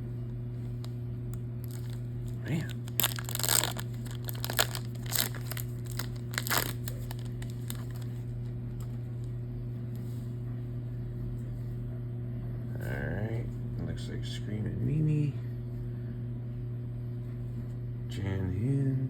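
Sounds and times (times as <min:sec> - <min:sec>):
steady low hum: 0:00.0 - 0:19.0
wrapper crinkling and tearing: 0:01.6 - 0:08.2.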